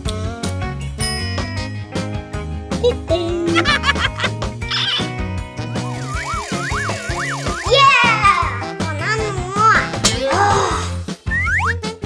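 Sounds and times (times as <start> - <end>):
upbeat background music: 0.0 - 12.0
bright ringing ding: 1.0 - 1.8.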